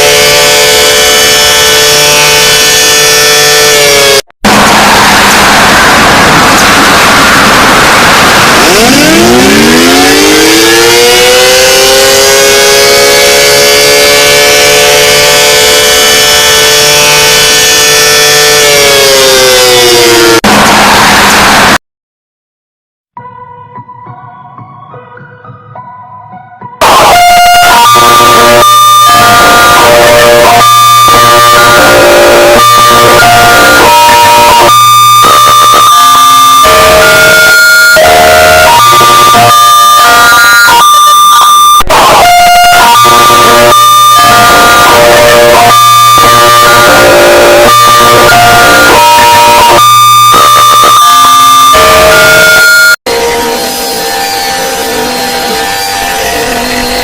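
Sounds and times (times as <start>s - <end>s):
distorted electronic alarm: 0.0s - 3.7s, 6.8s - 21.8s, 26.8s - 57.0s
siren winding up: 0.0s - 21.8s, 26.8s - 57.0s
harsh noise: 26.8s - 57.0s.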